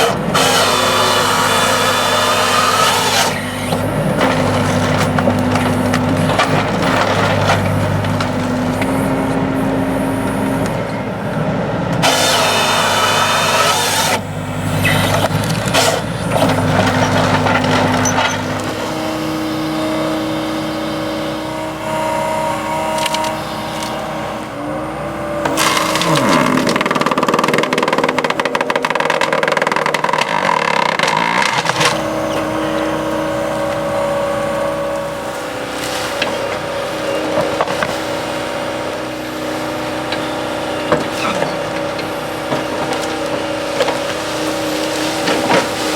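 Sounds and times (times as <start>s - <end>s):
machine engine revving: 12.0s - 45.9s.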